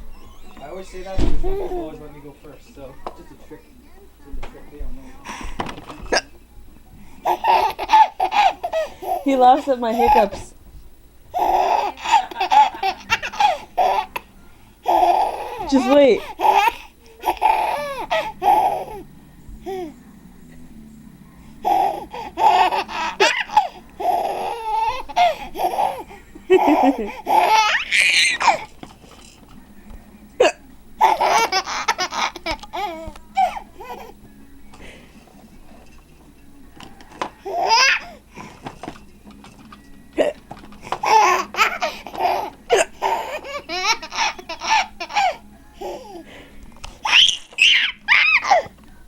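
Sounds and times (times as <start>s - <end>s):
baby laughing: 7.2s - 10.4s, 11.3s - 14.2s, 14.8s - 19.0s, 21.6s - 28.8s, 31.0s - 34.2s, 37.4s - 38.2s, 40.2s - 46.2s, 47.0s - 48.7s.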